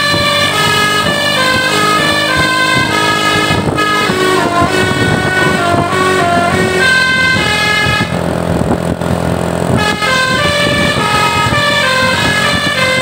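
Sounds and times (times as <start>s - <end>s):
multi-tone bus air horn tune: 0.0s - 13.0s.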